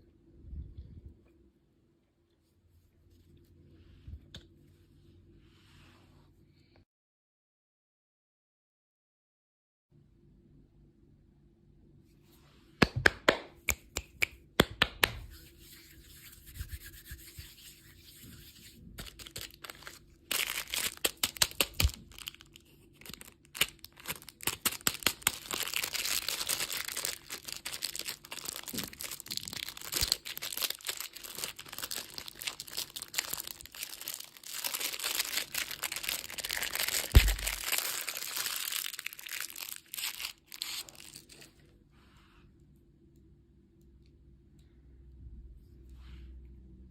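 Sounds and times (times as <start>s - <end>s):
candy wrapper tearing and crinkling: 19.0s - 41.5s.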